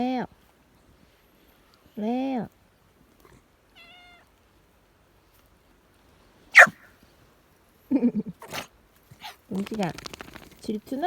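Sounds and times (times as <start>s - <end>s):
cat meowing: 3.8s - 4.3s
sharp loud animal cry: 6.6s - 6.8s.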